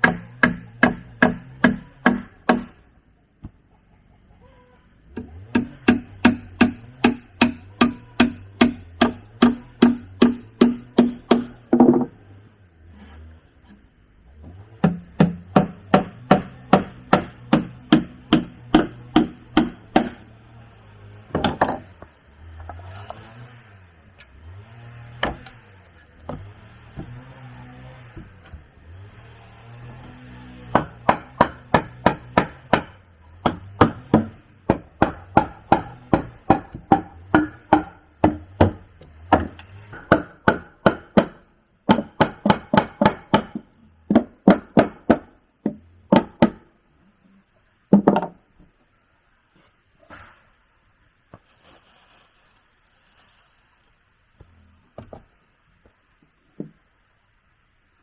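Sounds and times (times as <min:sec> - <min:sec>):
hand tool striking wood: 0:00.0 - 0:02.8, 0:05.1 - 0:12.1, 0:14.4 - 0:20.3, 0:21.3 - 0:22.8, 0:26.2 - 0:27.3, 0:30.7 - 0:46.6.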